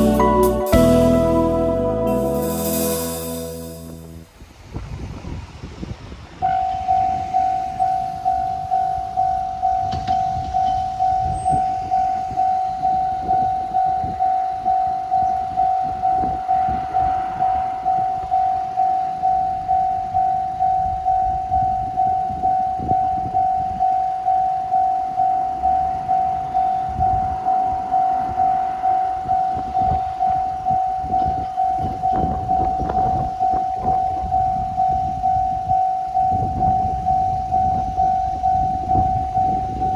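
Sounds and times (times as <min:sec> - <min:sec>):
level crossing bell ringing: 0:00.0 - 0:04.3
road traffic rumble: 0:00.0 - 0:20.6, 0:25.1 - 0:35.3.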